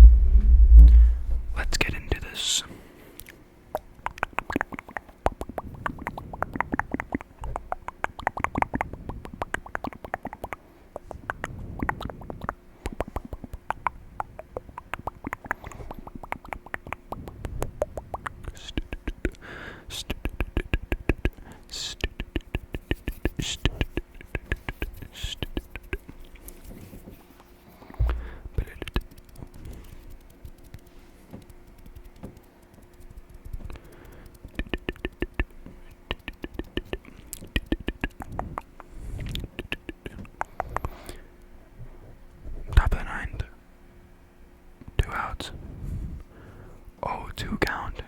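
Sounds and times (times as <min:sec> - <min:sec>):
wet mouth clicks and lip smacks: 0:03.2 - 0:19.4, 0:20.1 - 0:26.4, 0:27.9 - 0:41.2.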